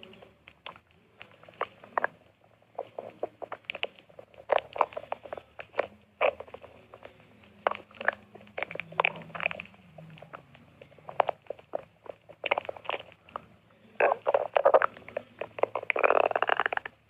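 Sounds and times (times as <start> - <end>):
stomach growling: 0.0 - 17.0.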